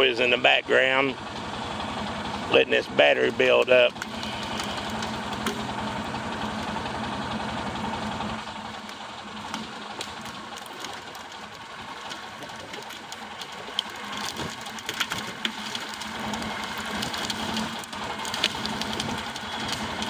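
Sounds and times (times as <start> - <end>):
engine running steadily: 0.0 - 20.0
clicks and rattles: 3.3 - 6.8, 8.0 - 20.0.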